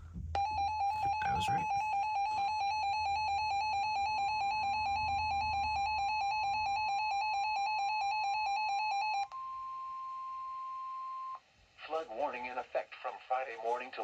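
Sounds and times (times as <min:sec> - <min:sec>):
steady warning alarm tone: 0:00.0 - 0:11.4
rapidly pulsing alarm beep: 0:00.2 - 0:09.2.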